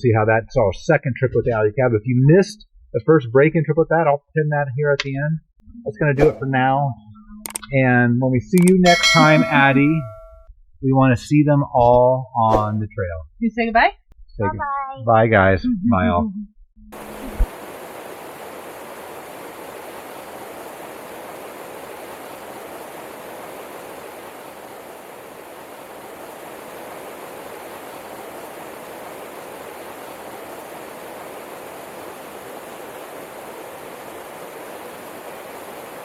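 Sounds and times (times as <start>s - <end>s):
running water rushing: 8.8s - 10.2s, 17.0s - 36.0s.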